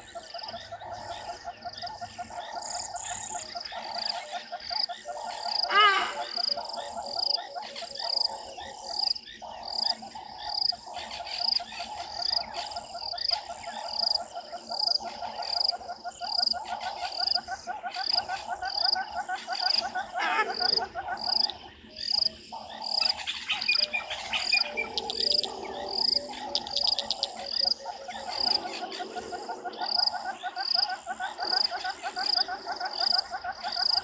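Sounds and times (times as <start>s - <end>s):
rapidly pulsing animal chorus: 0.0s - 34.0s
loud wavering animal call: 5.2s - 7.9s, 22.8s - 34.0s.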